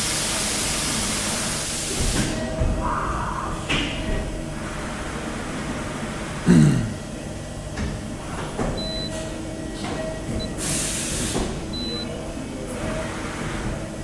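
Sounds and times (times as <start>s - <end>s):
burst of hiss: 10.6s - 11.5s.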